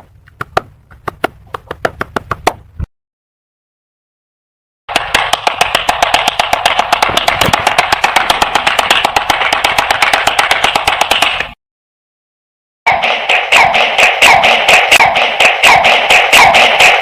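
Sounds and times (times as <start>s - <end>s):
people clapping: 4.9s - 11.6s.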